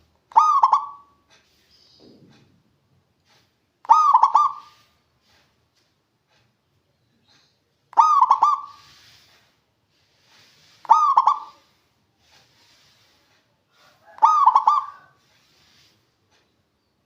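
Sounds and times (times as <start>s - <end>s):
dove cooing: 0.3s - 1.2s, 3.8s - 4.9s, 7.9s - 9.2s, 10.8s - 11.8s, 13.9s - 15.2s.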